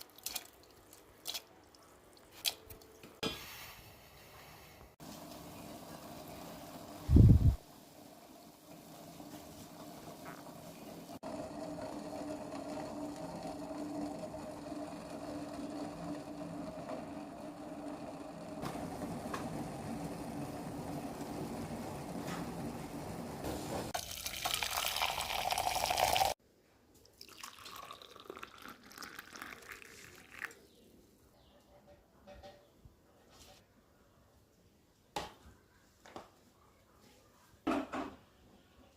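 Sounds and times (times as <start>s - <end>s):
liquid pouring into a glass: 24.0s - 26.4s, 27.1s - 30.6s.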